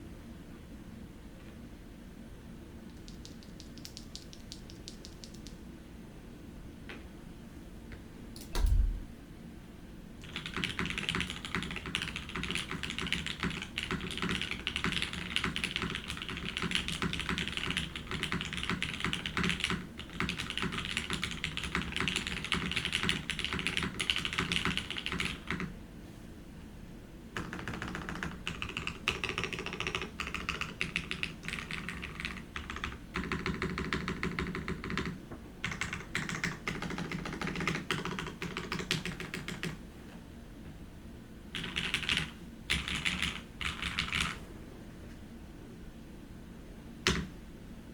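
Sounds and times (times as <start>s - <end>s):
deep thump: 8.6s - 9.2s.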